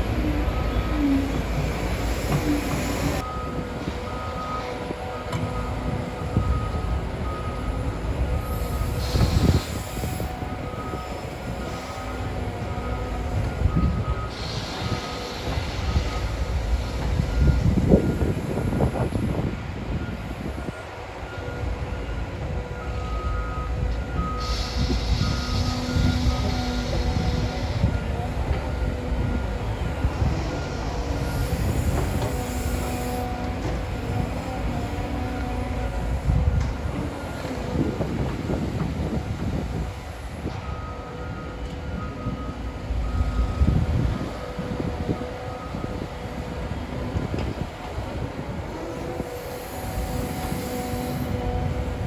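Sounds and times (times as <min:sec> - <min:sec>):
excavator diesel engine rumbling: 0:00.0 - 0:52.0
reversing alarm beeps: 0:00.0 - 0:52.0
hiss: 0:08.5 - 0:10.4, 0:14.3 - 0:17.2, 0:24.4 - 0:28.5, 0:29.9 - 0:34.5, 0:49.1 - 0:51.8.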